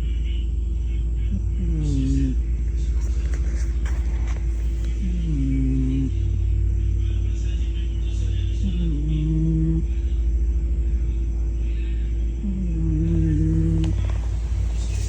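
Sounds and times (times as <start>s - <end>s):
pet snoring loudly: 12.4s - 15.0s.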